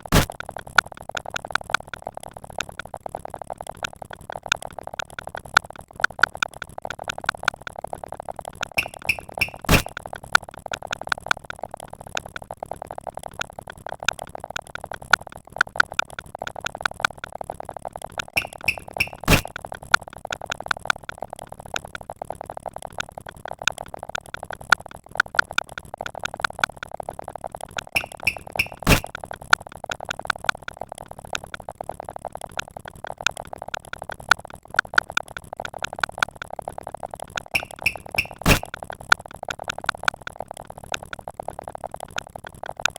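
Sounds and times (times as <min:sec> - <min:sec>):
electronic synthesizer music: 0:08.8 - 0:09.9, 0:18.4 - 0:19.4, 0:28.0 - 0:29.1, 0:37.6 - 0:38.6.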